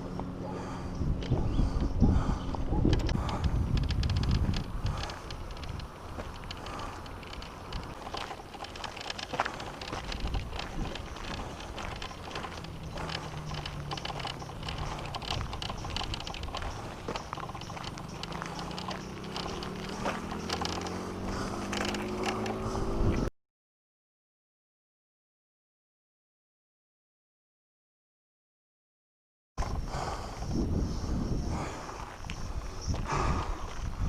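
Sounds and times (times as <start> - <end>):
pitched hum: 0.0 - 23.3
wheels rolling on pavement: 2.2 - 23.3.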